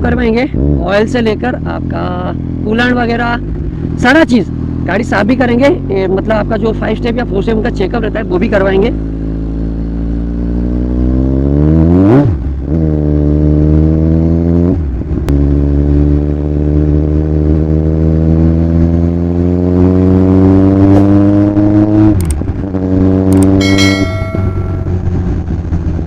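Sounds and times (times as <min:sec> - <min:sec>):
motorcycle engine accelerating: 0:08.9 - 0:26.0
gear upshifts: 0:23.3 - 0:25.0.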